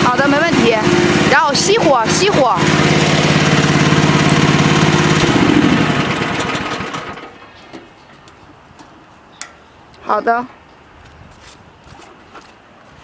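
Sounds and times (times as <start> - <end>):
excavator engine running: 0.0 - 7.4.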